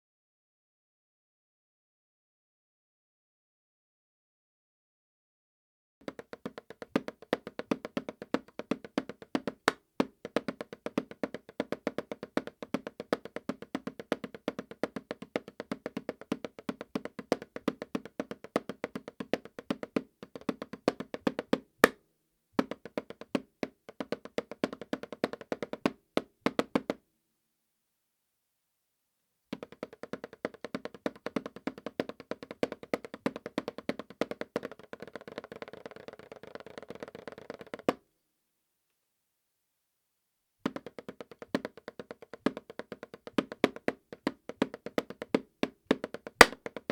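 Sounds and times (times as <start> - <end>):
drumsticks tapping practice pad: 6.0 - 22.0, 22.6 - 27.0, 29.5 - 38.0, 40.7 - 46.9.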